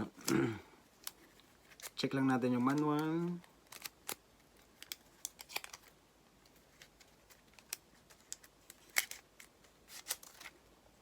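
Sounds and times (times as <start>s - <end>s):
packaging clicks: 2.6s - 5.9s, 6.8s - 10.6s
paper rustling: 6.5s - 10.6s.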